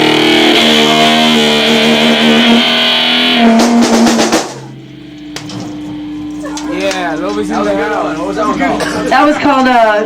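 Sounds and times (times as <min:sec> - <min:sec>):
drum and cymbal hits: 0:00.0 - 0:06.1
distorted live band: 0:00.0 - 0:06.7
amplifier hum: 0:00.0 - 0:10.0.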